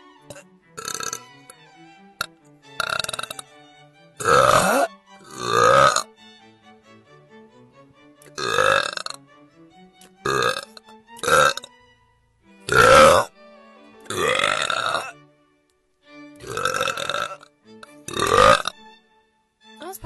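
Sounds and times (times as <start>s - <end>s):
quiet background music: 0.0s - 20.0s
woman belching: 0.3s - 1.2s, 2.8s - 3.4s, 4.2s - 6.1s, 8.4s - 9.2s, 10.2s - 11.7s, 12.7s - 13.3s, 14.1s - 15.1s, 16.4s - 17.5s, 18.1s - 18.8s.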